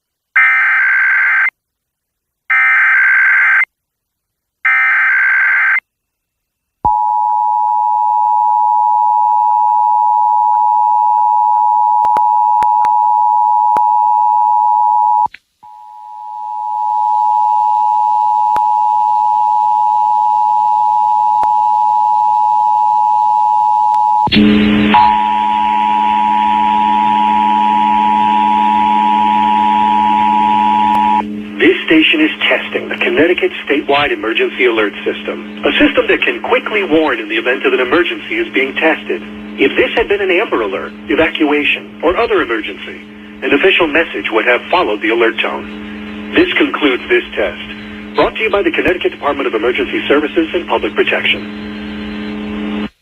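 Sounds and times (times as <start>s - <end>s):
low hum and hiss: 24.0s - 53.0s
two-tone alert signal: 24.2s - 31.2s.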